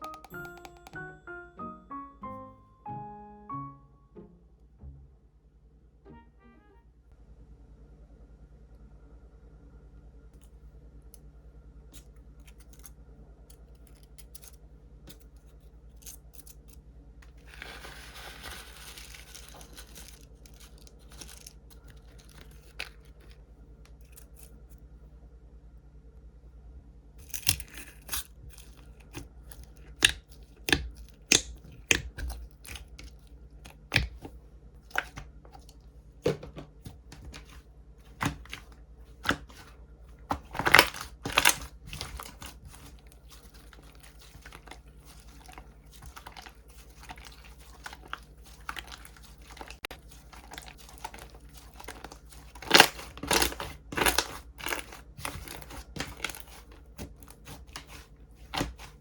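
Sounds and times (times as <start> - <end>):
packaging tearing and crinkling: 17.4 - 23.3, 40.4 - 57.4.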